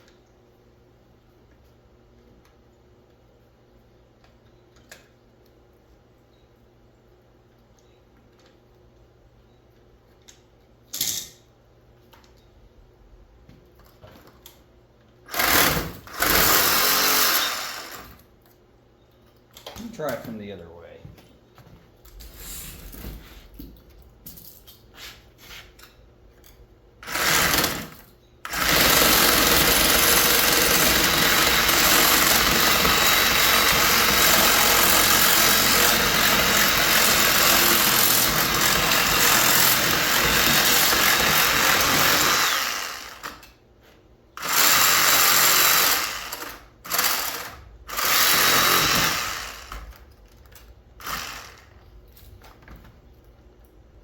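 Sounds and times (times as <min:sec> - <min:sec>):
power tool running: 0:15.3 - 0:18.1, 0:27.0 - 0:43.4, 0:44.4 - 0:50.0, 0:51.0 - 0:51.8.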